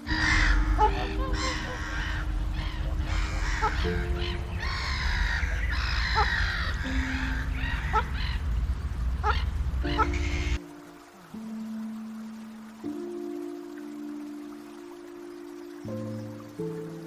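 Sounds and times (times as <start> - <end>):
background music of held notes: 0.0 - 8.5, 9.2 - 17.0
low rumble: 0.0 - 10.6
birds cawing and chirping: 0.0 - 11.1.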